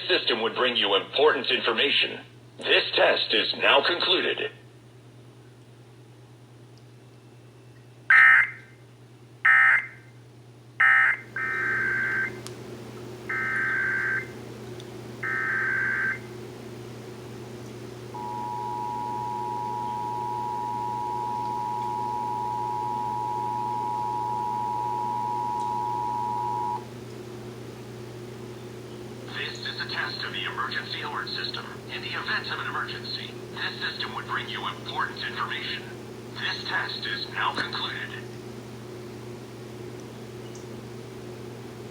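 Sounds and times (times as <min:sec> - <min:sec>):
two-tone attention signal: 0:18.2 - 0:26.8.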